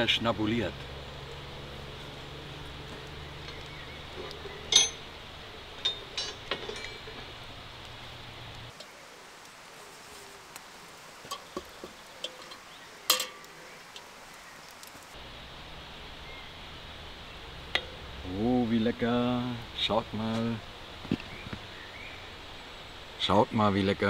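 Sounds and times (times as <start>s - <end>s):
metal cooking pot clinking: 4.1s - 5.1s, 5.8s - 7.3s, 11.3s - 13.5s.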